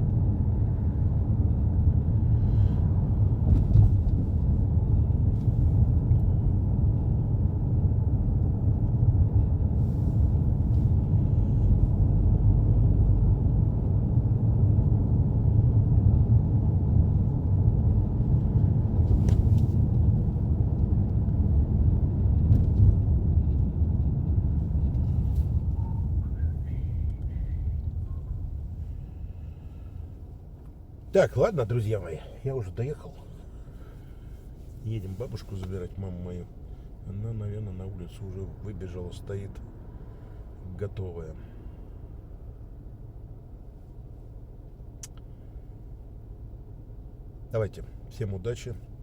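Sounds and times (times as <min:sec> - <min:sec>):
car road and engine noise: 0:00.0 - 0:49.0.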